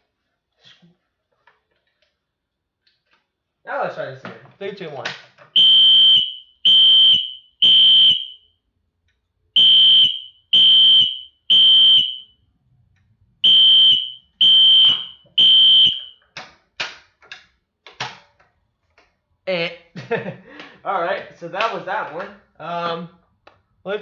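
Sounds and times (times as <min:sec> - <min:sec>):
fire alarm horn blasts: 0:05.6 - 0:08.6, 0:09.6 - 0:12.5, 0:13.4 - 0:16.2.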